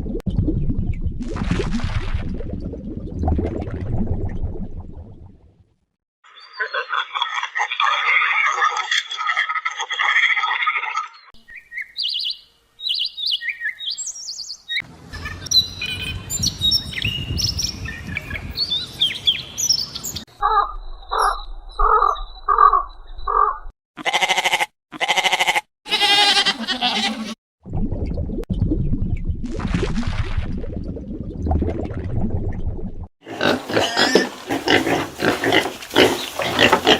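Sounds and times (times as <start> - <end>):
birds chirping: 11.1 - 23.6.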